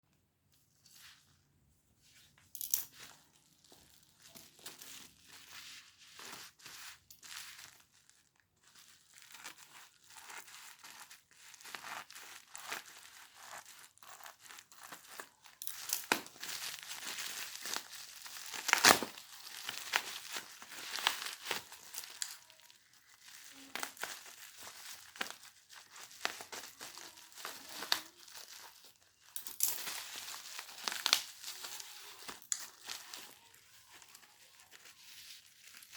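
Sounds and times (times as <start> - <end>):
packaging crinkling: 2.9 - 35.9
packaging sharp cracks: 12.5 - 22.6.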